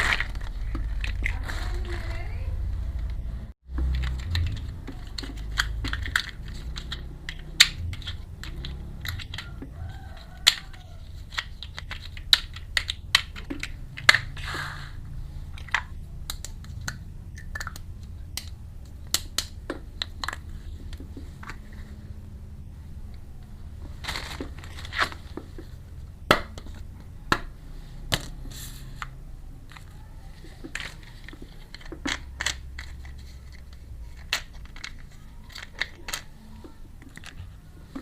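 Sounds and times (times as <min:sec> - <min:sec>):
toy kitchen pieces clicking: 0:00.0 - 0:02.2, 0:03.8 - 0:14.4, 0:15.5 - 0:21.0, 0:29.7 - 0:38.0.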